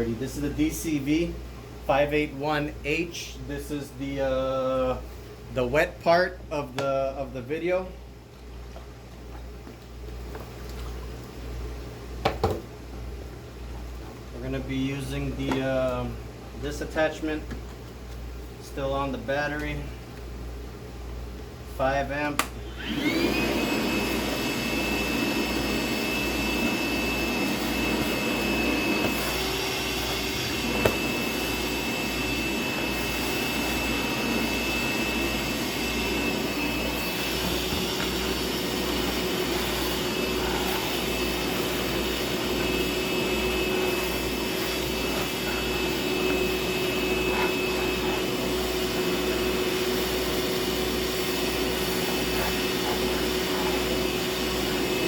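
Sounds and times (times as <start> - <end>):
wet-dry vacuum running: 22.3 - 55.0.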